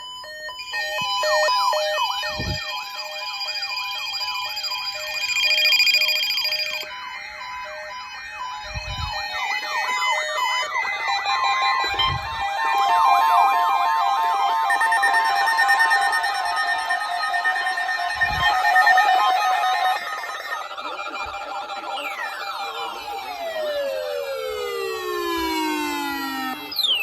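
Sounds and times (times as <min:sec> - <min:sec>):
electronic siren sweeping: 0:00.0 - 0:27.0
steady electronic tones: 0:06.6 - 0:27.0.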